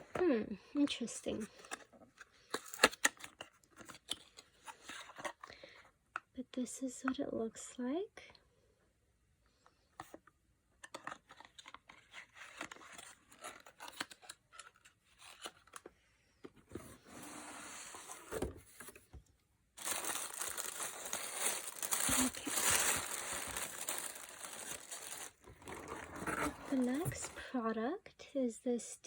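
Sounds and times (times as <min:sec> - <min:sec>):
packaging crinkling and tearing: 0:11.2 - 0:15.8, 0:19.8 - 0:27.4.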